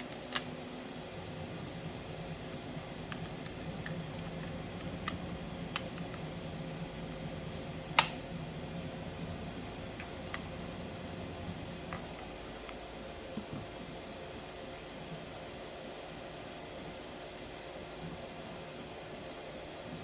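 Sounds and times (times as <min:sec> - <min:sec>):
metal parts clicking: 0:00.0 - 0:00.6
steady low hum: 0:00.0 - 0:20.0.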